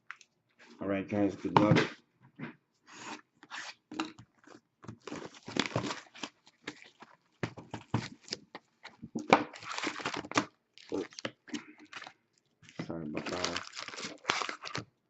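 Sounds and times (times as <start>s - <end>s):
plastic wrap and cardboard tearing: 5.0s - 8.5s, 9.3s - 12.1s, 13.0s - 15.0s.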